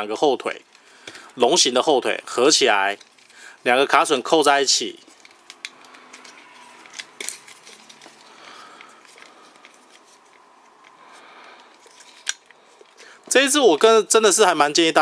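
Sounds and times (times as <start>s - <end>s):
plastic toy parts clicking: 5.1s - 8.1s.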